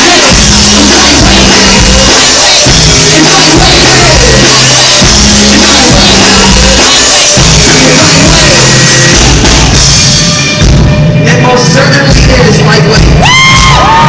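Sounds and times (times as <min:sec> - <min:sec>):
person singing: 0:00.0 - 0:09.8
drums: 0:00.0 - 0:14.0
heavy bass line: 0:00.0 - 0:14.0
loud live music: 0:00.0 - 0:14.0.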